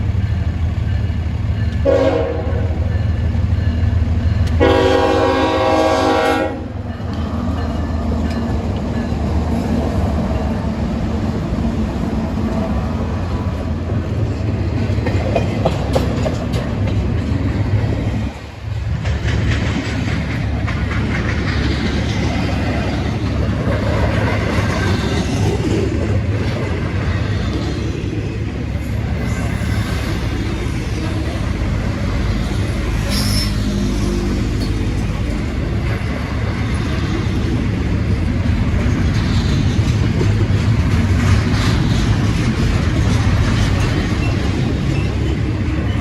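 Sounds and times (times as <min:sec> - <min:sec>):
diesel locomotive rumble: 0:00.0 - 0:46.0
train wheels clattering on rails: 0:00.0 - 0:46.0
train air horn chord: 0:01.8 - 0:02.7, 0:04.6 - 0:06.7.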